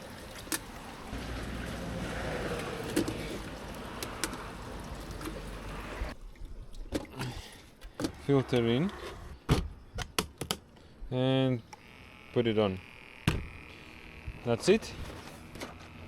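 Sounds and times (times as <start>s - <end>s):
water sloshing and splashing: 0.0s - 8.0s.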